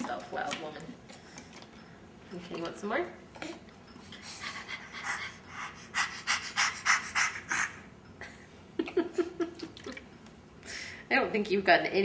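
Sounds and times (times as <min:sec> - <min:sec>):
baby panting: 0:03.4 - 0:07.9.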